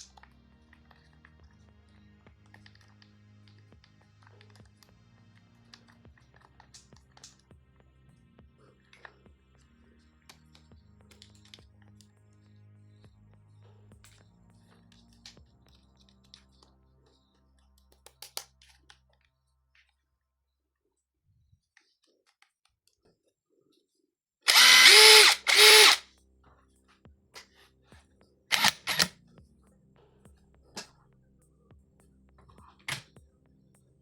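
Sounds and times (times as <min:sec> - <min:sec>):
impact driver motor spinning: 0:24.5 - 0:26.0, 0:28.5 - 0:29.1.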